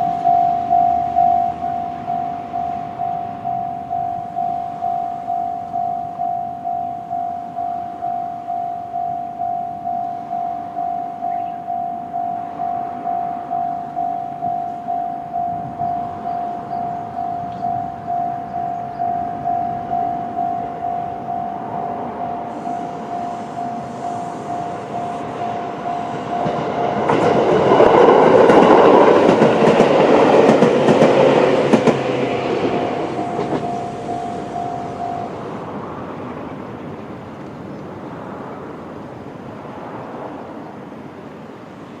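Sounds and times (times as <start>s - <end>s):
level crossing warning bell: 0.0s - 36.6s
train rumble: 0.0s - 42.0s
train wheels clacking: 13.3s - 36.0s.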